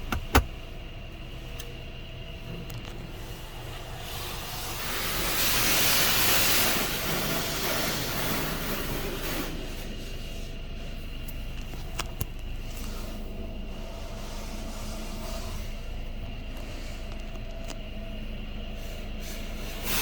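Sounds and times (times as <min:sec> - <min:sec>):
low steady hum: 0:00.0 - 0:05.9, 0:08.2 - 0:20.0.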